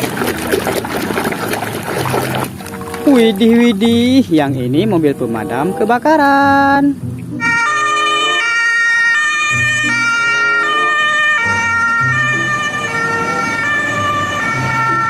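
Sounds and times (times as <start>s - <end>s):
fire engine siren: 7.4s - 15.0s.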